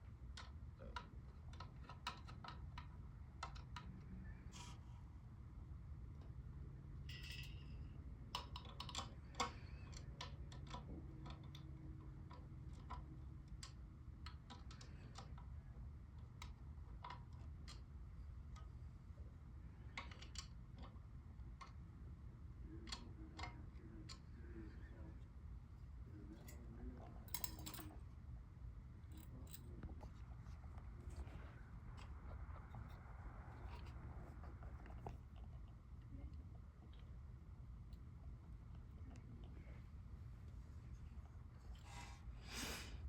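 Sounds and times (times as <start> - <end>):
small clicks and taps of parts: 0.0 - 4.1, 7.1 - 18.8, 19.7 - 21.9, 22.6 - 24.4, 26.4 - 28.0
low steady hum: 0.0 - 43.0.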